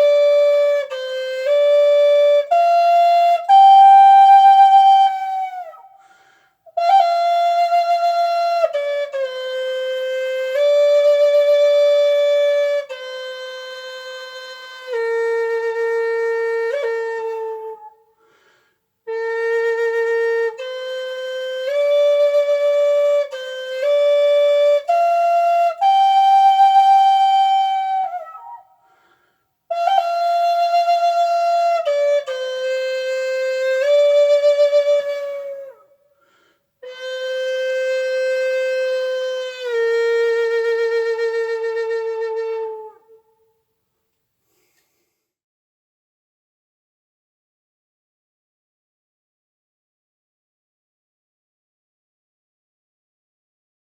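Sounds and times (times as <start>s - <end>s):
solo flute slow melody: 0.0s - 18.3s, 19.0s - 43.7s.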